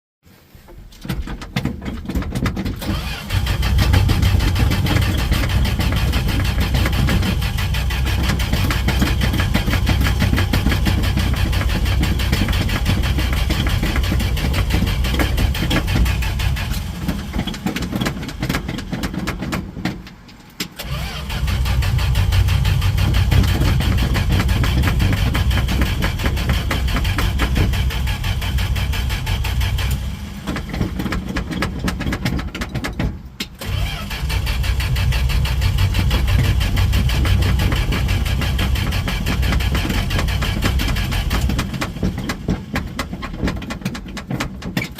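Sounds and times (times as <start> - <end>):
engine cranking on starter: 1.0 - 44.9.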